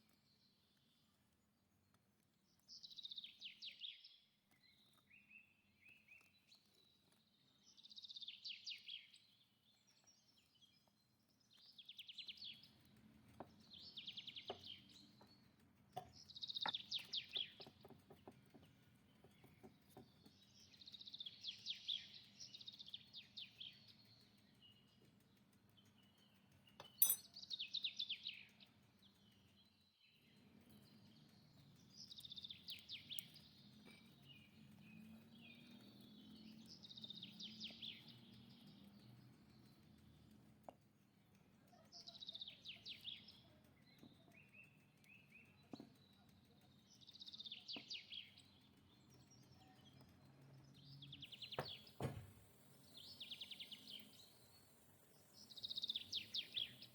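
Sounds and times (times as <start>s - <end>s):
songbird trilling: 26.8s - 28.0s.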